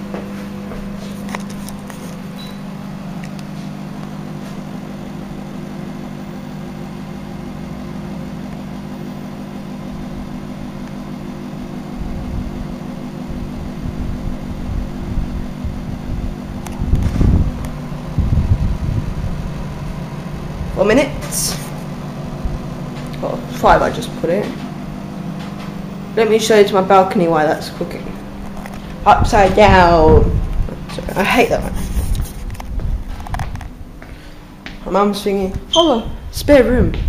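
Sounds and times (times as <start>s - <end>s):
microwave oven humming: 0.0s - 37.0s
low rumbles and thumps: 12.0s - 19.9s, 28.2s - 34.9s, 35.5s - 37.0s.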